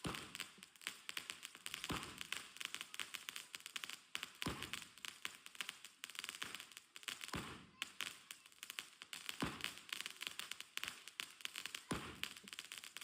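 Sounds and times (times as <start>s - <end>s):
firework shells crackling: 0.0s - 13.0s
firework launch thumps: 4.4s - 4.8s, 7.3s - 7.7s, 9.4s - 9.7s.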